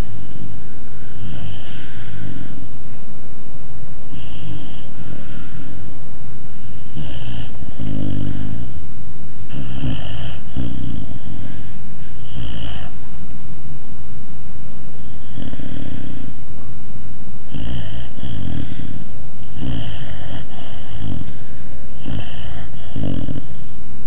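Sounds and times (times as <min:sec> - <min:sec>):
puppy snoring: 0:00.0 - 0:02.8, 0:04.0 - 0:08.8, 0:09.4 - 0:13.1, 0:14.9 - 0:16.4, 0:17.4 - 0:23.8.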